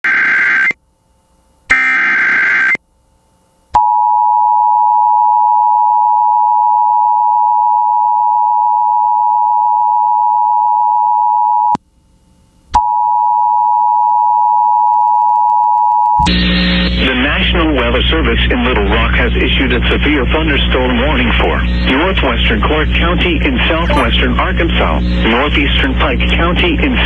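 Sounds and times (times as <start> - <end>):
two-tone attention signal: 23.8 - 24.2.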